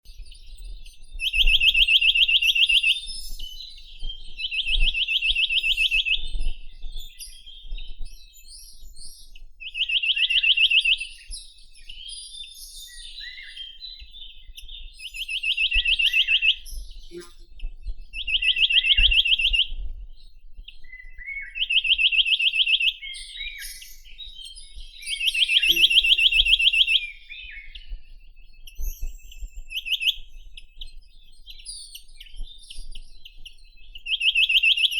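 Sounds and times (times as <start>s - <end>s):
bird singing fast trills: 25.1s - 27.9s
soft bird call notes: 25.2s - 26.9s.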